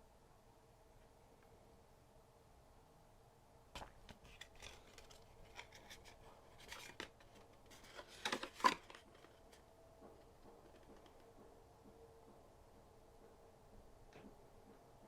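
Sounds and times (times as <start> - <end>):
packaging rustling and clicking: 3.8 - 9.6.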